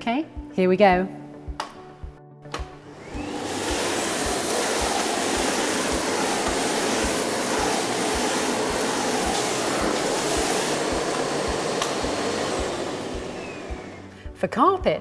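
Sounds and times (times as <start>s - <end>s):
vacuum cleaner motor whine: 2.8s - 14.2s.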